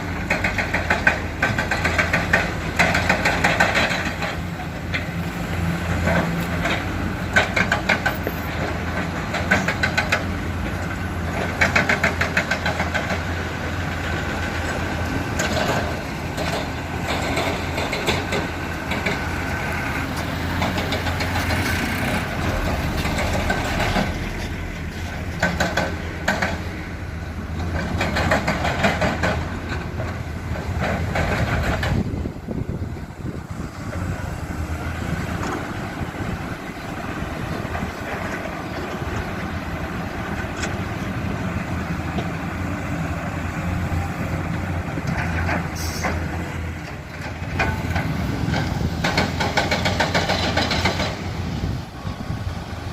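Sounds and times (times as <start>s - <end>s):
rattling clatter of digging: 0.0s - 52.8s
excavator diesel engine running: 0.0s - 52.9s.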